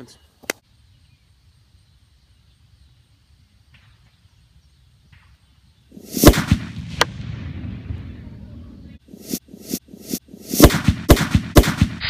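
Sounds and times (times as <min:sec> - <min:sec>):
loud explosion blast: 0:06.1 - 0:08.6.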